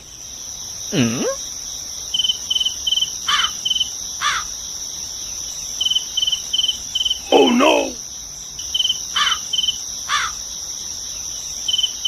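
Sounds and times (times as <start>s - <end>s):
cricket-like chirps: 0.0s - 12.0s
insects buzzing: 0.0s - 12.0s.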